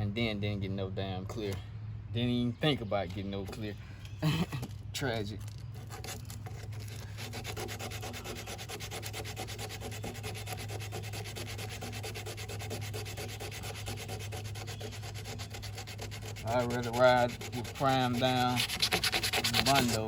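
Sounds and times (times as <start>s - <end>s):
sandpaper sanding by hand: 5.8s - 20.0s.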